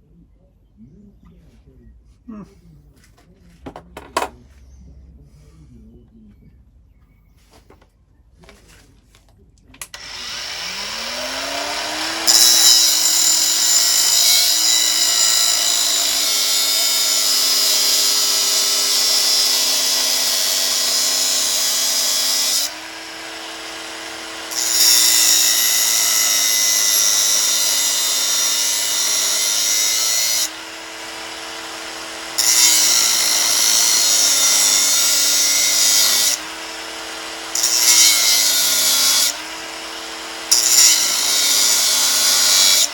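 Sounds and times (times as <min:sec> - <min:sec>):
angle grinder cutting steel: 0:09.9 - 0:42.9.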